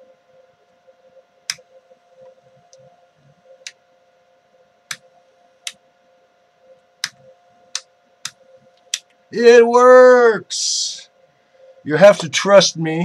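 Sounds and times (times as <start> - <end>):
toggle switch clicks: 7.0 - 9.1.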